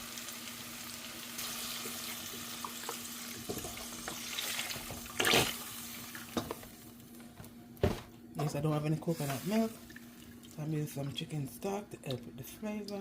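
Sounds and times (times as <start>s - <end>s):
sizzling: 0.0s - 7.1s, 9.0s - 11.0s.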